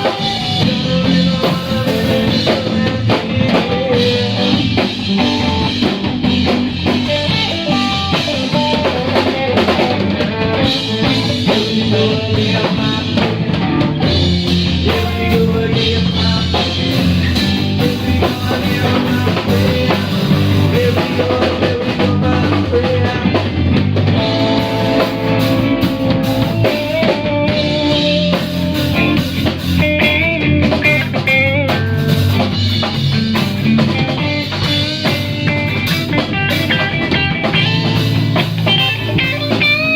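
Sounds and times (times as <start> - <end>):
drum kit with rimshots: 0.0 - 39.9
electric guitar playing: 0.0 - 39.9.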